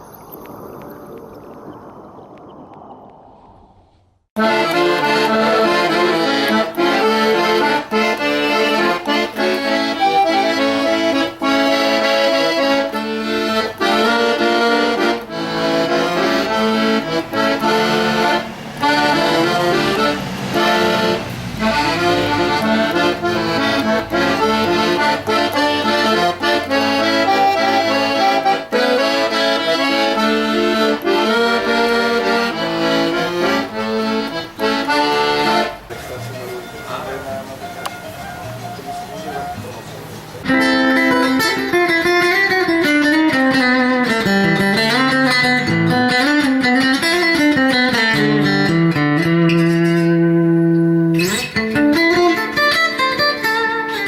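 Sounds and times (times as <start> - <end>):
accordion playing a tune: 4.4 - 54.0.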